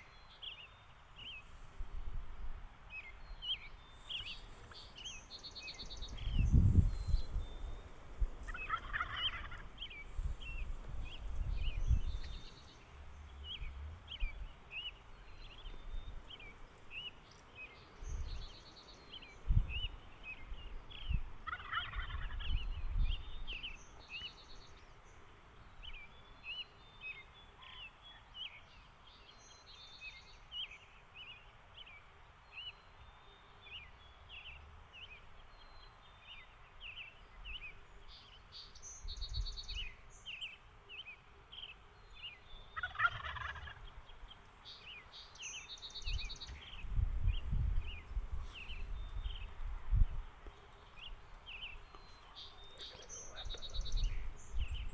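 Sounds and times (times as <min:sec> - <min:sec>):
small birds chirping: 0:02.8 - 0:54.9
turkey gobbling: 0:08.5 - 0:09.7, 0:21.4 - 0:22.4, 0:42.8 - 0:43.8.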